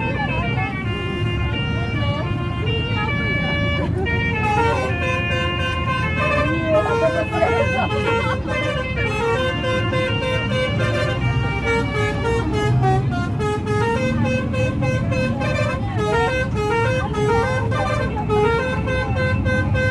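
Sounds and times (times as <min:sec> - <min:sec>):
bus engine rumble: 0:00.0 - 0:19.9
musical air horn melody: 0:00.0 - 0:19.9.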